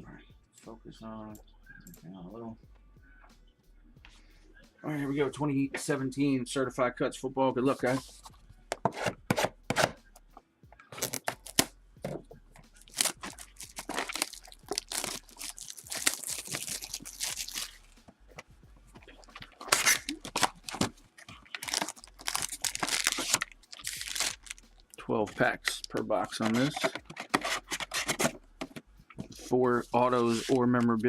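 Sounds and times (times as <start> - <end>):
plastic wrapping tearing and crinkling: 10.9 - 11.7, 12.8 - 18.0, 19.1 - 25.0, 25.6 - 28.4.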